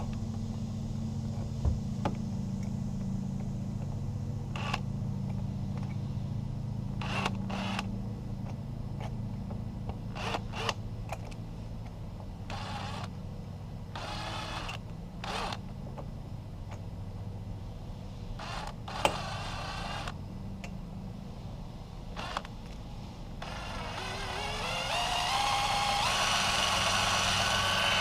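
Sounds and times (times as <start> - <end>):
electric drill humming: 14.0 - 15.6, 18.4 - 20.2, 22.2 - 22.5, 23.4 - 28.0.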